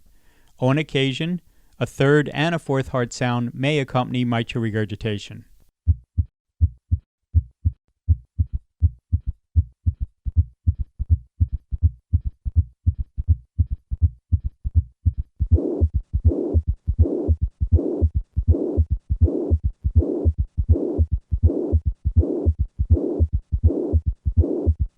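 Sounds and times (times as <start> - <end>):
heart sounds in galloping rhythm: 5.9 - 24.9
rushing heart murmur: 5.9 - 24.9.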